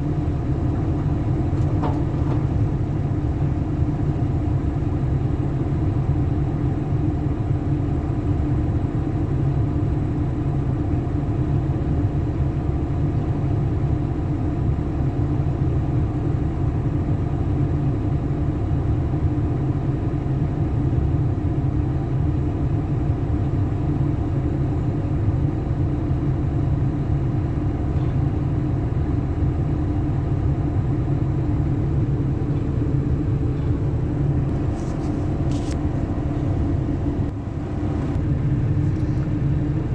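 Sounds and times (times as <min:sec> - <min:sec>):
excavator diesel engine droning: 0:00.0 - 0:39.9.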